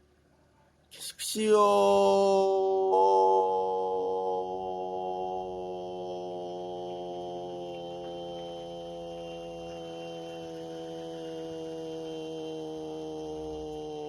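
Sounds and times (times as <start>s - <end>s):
sustained drone chord: 2.0s - 14.0s.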